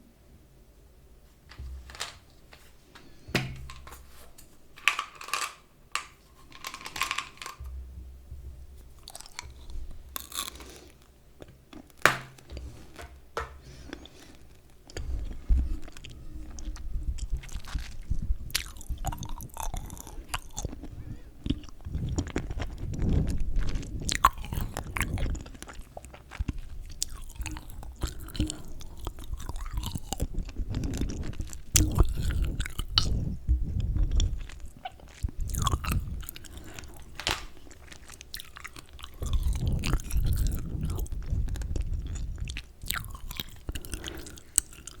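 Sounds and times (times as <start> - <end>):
chewing gum clicks and crackles: 8.9 - 12.0, 13.8 - 45.0
wet chewing: 8.9 - 45.0.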